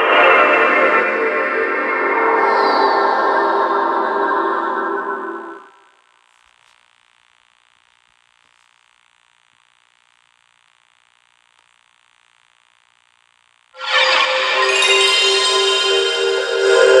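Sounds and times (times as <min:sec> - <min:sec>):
faint steady hiss: 0:05.2 - 0:13.8.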